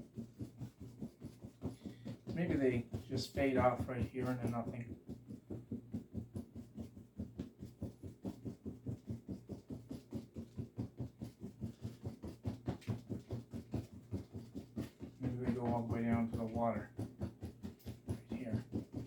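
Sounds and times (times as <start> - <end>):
paint brush dabbing soft taps: 0.0 - 9.5, 10.5 - 19.0.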